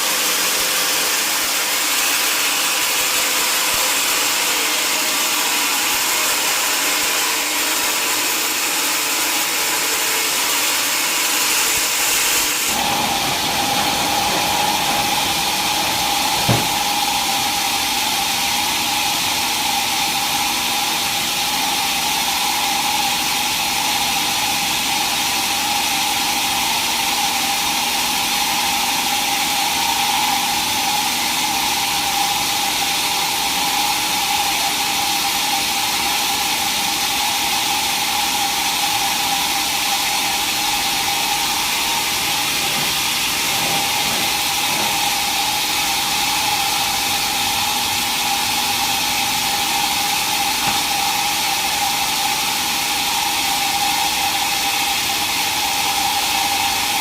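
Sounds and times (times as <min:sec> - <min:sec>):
sawmill saw cutting wood: 0:00.0 - 0:57.0
sharp knock: 0:16.2 - 0:17.0.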